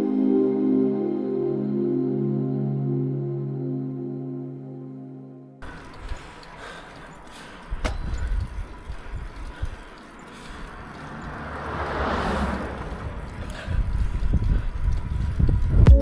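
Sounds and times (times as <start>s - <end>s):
vehicle passing: 5.6s - 15.7s
wind buffeting microphone: 7.7s - 9.8s, 12.7s - 16.0s.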